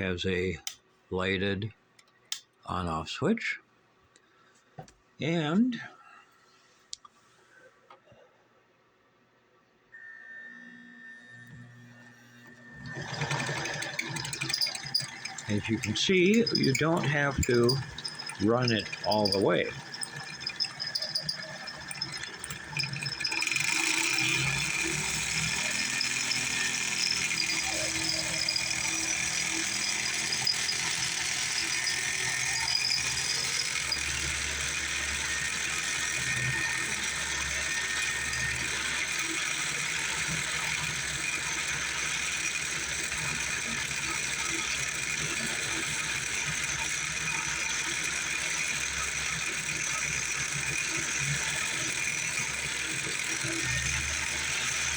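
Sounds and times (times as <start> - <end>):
metal lathe motor running: 11.9 - 54.9
mechanical rattle: 12.8 - 54.9.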